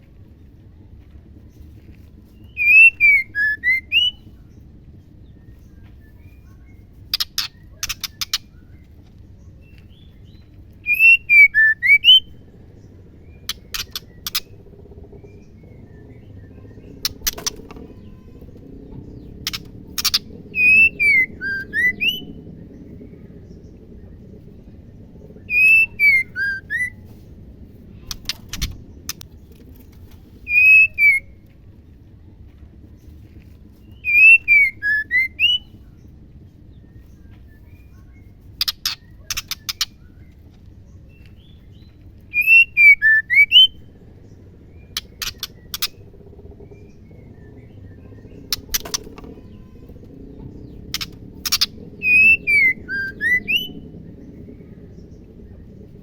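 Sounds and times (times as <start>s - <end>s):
bird whistling phrase: 2.5s - 4.2s, 10.8s - 12.3s, 25.4s - 27.0s, 30.5s - 31.4s, 34.0s - 35.8s, 42.3s - 43.8s, 51.6s - 53.8s
bird clicking calls: 13.4s - 14.7s, 19.4s - 22.2s, 44.9s - 46.8s, 50.8s - 53.7s.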